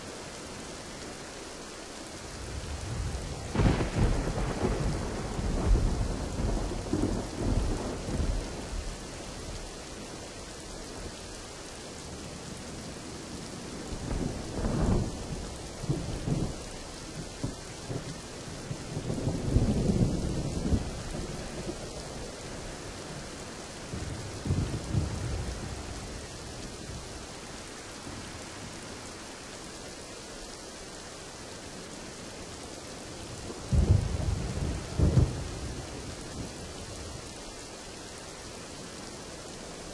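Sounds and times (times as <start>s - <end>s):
heavy rain: 0.0s - 39.9s
rolling thunder: 2.4s - 9.0s, 23.8s - 27.0s, 33.4s - 37.0s.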